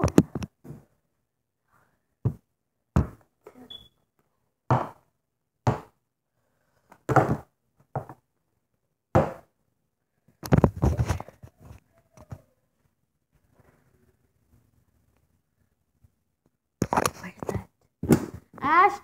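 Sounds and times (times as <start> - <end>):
thumps and knocks: 0.0 - 0.9, 7.1 - 8.2
brief high squeak: 3.6 - 4.0.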